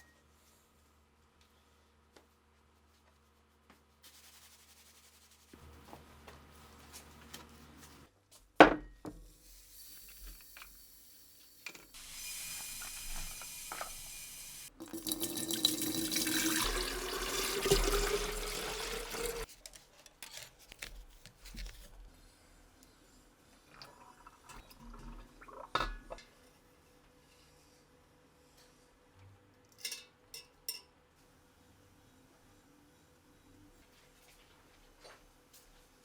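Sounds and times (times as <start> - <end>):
tap water filling container: 12.0 - 14.1, 14.7 - 19.5.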